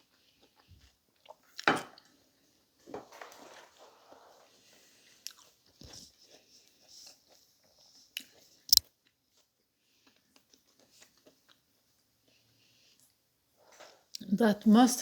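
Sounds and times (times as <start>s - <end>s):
person chewing food: 0.0s - 2.7s, 4.7s - 13.2s
food crunching: 5.1s - 9.2s, 9.9s - 12.4s.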